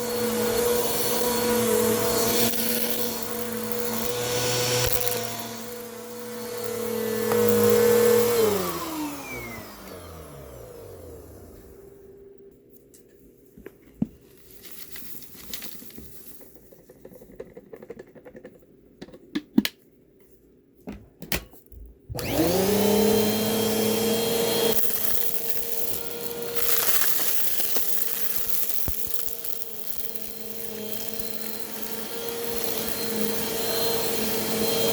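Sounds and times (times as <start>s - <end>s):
vacuum cleaner motor whining: 0.0s - 12.4s, 22.1s - 34.9s
clicks and knocks of handling: 12.8s - 19.8s.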